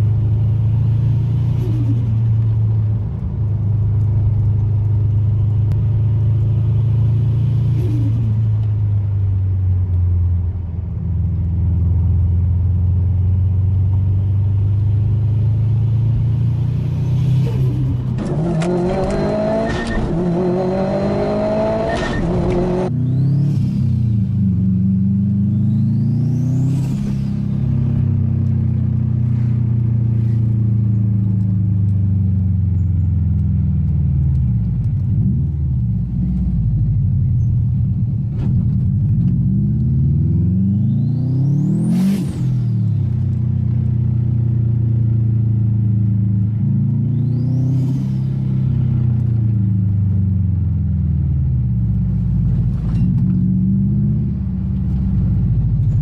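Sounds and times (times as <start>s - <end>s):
car engine revving: 14.5s - 30.6s, 38.0s - 44.0s.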